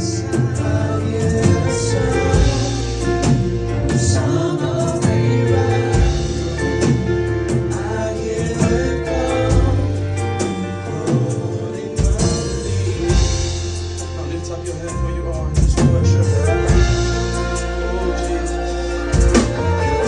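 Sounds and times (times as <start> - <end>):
person singing: 0.0 - 13.6
gospel band playing: 0.0 - 20.0.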